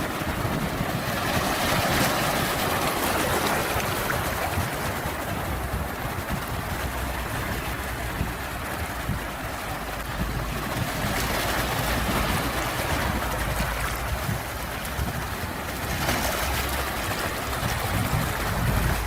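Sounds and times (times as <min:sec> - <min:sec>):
sea waves washing: 0:00.0 - 0:19.0.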